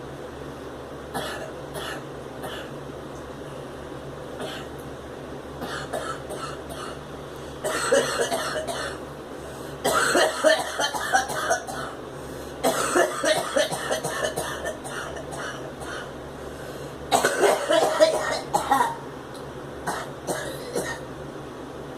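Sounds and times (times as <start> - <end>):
girl coughing: 1.1 - 2.7, 5.6 - 7.0, 7.6 - 9.0, 9.8 - 12.0, 12.6 - 16.1, 17.1 - 19.0, 19.9 - 21.0.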